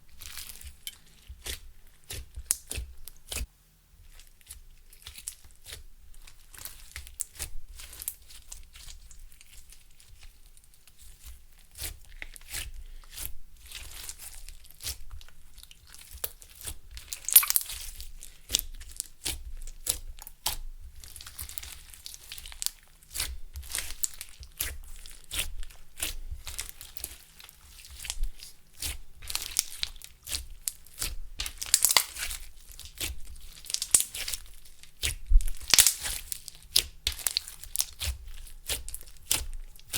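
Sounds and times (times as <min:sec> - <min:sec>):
slime squished by hand: 0:00.1 - 0:10.4, 0:11.0 - 0:39.9.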